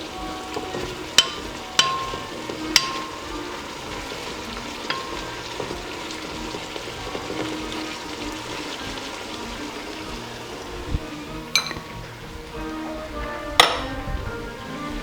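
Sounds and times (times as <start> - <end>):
utensil clinking against pan: 0.0 - 10.7, 11.4 - 12.2, 13.6 - 13.9
food sizzling in oil: 0.0 - 15.0.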